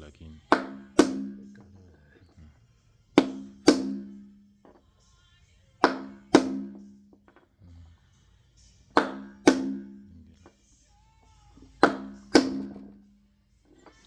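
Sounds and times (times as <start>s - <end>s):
slow beat background music: 0.0s - 14.0s
drum hits with ringing low note: 3.2s - 4.4s, 5.8s - 6.9s.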